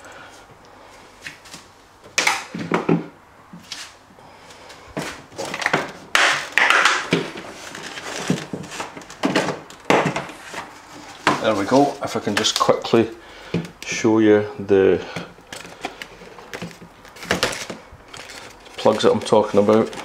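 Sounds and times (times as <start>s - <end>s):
plastic knocks and creaking scrapes: 6.6s - 12.7s, 15.1s - 20.0s.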